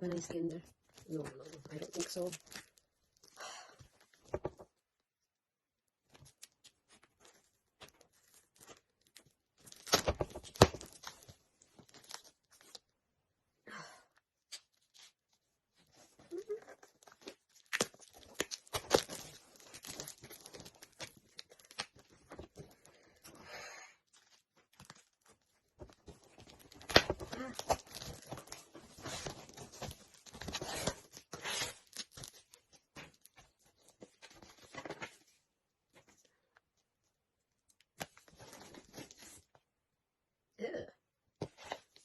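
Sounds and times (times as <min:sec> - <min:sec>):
packaging tearing and crinkling: 0:01.7 - 0:03.3, 0:08.3 - 0:12.8, 0:16.3 - 0:22.8, 0:24.2 - 0:33.2.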